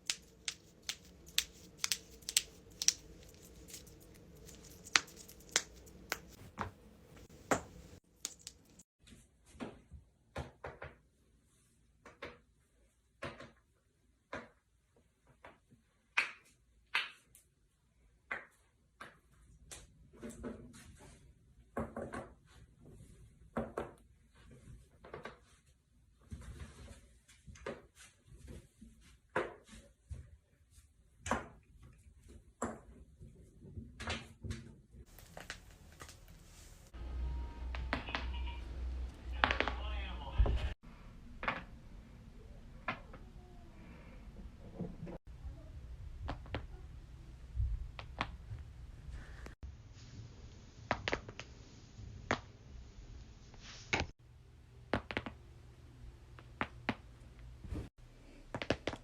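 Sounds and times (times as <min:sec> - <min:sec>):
low room rumble: 0:35.1 - 0:49.5.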